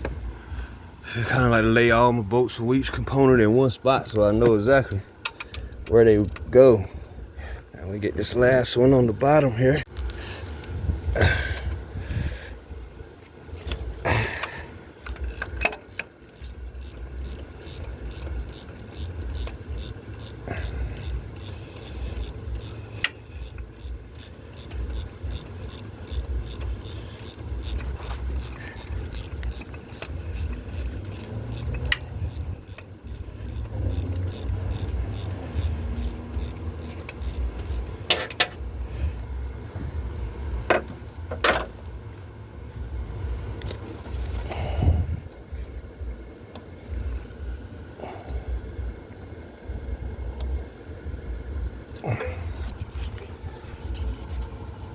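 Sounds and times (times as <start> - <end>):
ratchet wrench clicking: 13.6 - 38.5.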